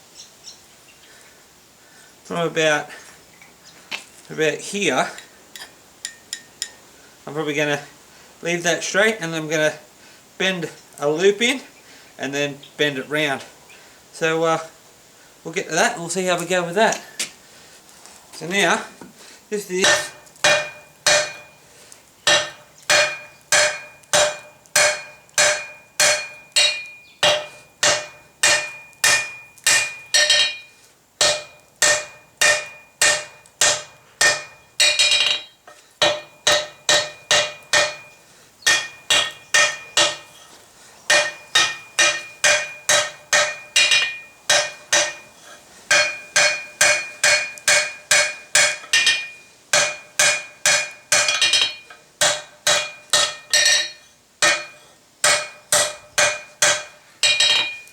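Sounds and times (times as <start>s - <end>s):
hammer striking steel on anvil: 5.2s - 6.8s, 19.8s - 21.6s, 22.3s - 40.3s, 41.1s - 57.9s.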